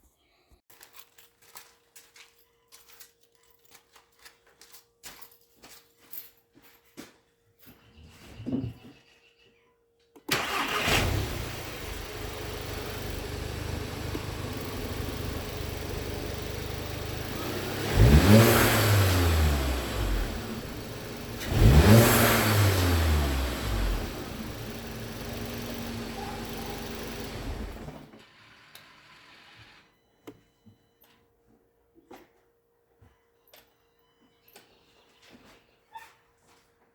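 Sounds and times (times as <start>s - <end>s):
car engine idling and revving: 10.4s - 29.6s.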